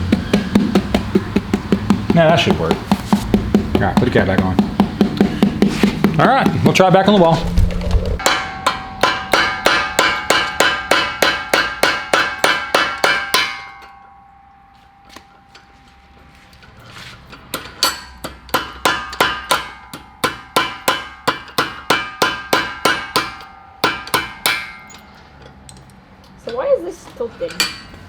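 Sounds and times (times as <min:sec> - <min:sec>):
hammer striking metal: 0:08.2 - 0:15.3, 0:17.5 - 0:25.9, 0:27.5 - 0:28.0.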